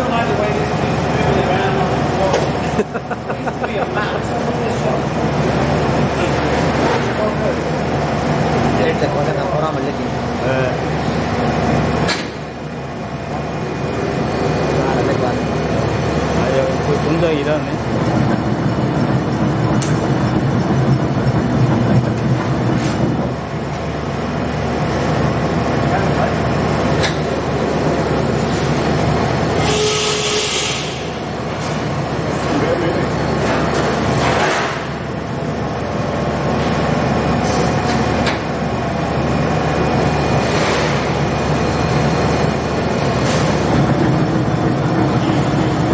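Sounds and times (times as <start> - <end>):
slicing machine rumble: 0.0 - 45.9.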